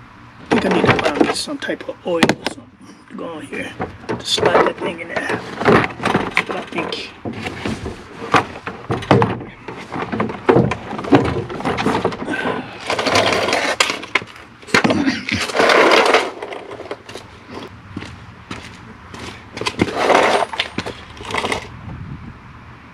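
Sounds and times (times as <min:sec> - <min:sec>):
scraping: 0:00.4 - 0:21.8.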